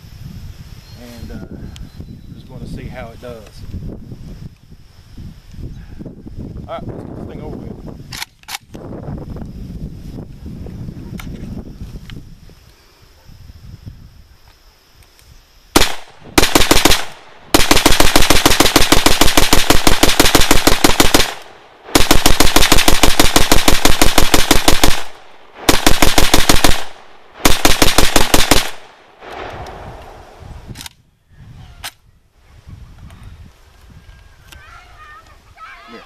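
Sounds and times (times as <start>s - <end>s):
rifle firing: 15.8s - 30.3s.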